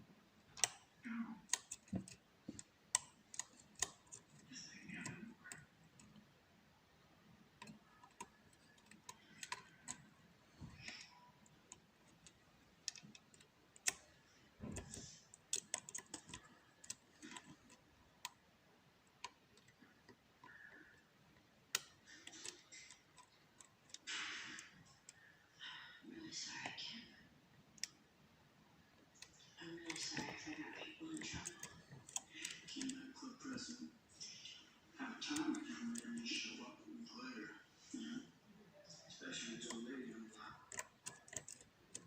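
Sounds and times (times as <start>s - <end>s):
lock pick clicking and scraping: 0.5s - 6.2s, 7.6s - 18.4s, 19.0s - 25.2s, 29.0s - 33.0s, 40.5s - 42.0s.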